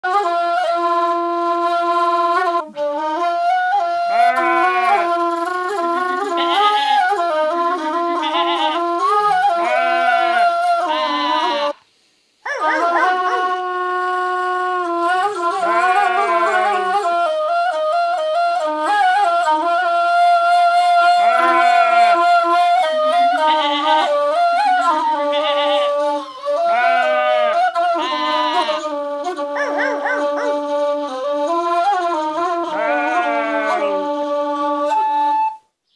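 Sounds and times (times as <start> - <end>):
wooden flute melody: 0.0 - 35.9
voice imitating animal calls: 4.1 - 5.2, 15.6 - 17.0, 21.1 - 22.2, 29.5 - 30.6, 32.7 - 34.1.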